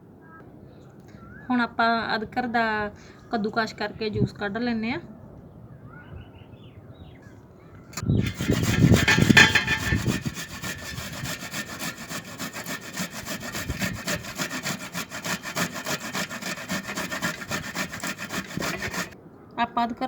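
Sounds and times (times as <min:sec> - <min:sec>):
ginger grated on a hand grater: 0:08.2 - 0:19.2.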